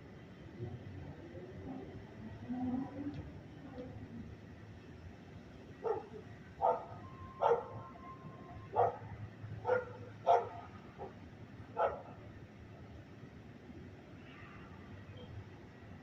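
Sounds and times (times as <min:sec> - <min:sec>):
dog barking: 0:05.8 - 0:07.8, 0:08.7 - 0:11.2, 0:11.8 - 0:12.2.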